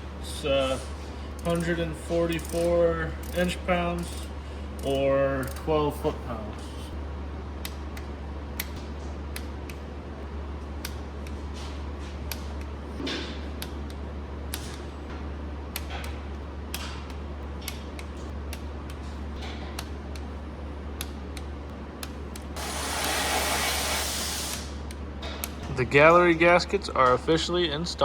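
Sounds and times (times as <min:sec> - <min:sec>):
ratchet wrench clicking: 0:01.4 - 0:06.0
loud hiss: 0:22.6 - 0:24.8.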